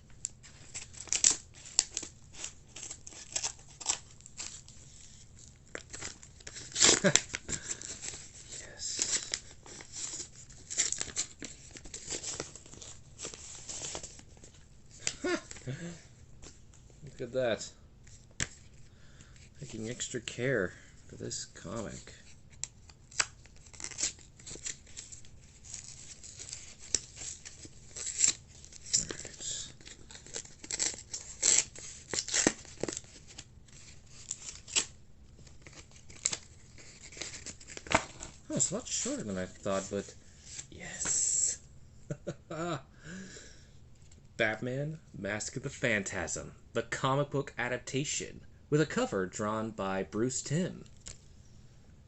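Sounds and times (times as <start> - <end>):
packing tape tearing and crinkling: 0.2 - 15.9, 21.9 - 41.1.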